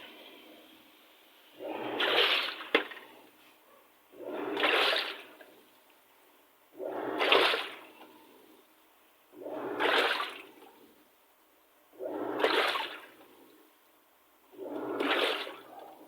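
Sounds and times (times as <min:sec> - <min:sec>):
washing machine water sloshing: 0:01.8 - 0:03.1, 0:04.4 - 0:05.5, 0:07.1 - 0:08.0, 0:09.7 - 0:10.7, 0:12.2 - 0:13.2, 0:14.7 - 0:16.0.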